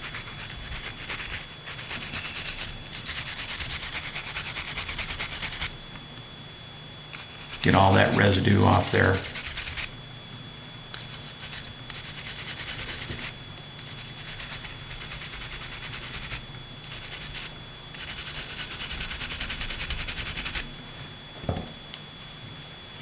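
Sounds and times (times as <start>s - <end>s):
brush scrubbing in barrel: 0.0s - 5.7s, 7.2s - 9.9s, 11.2s - 20.6s.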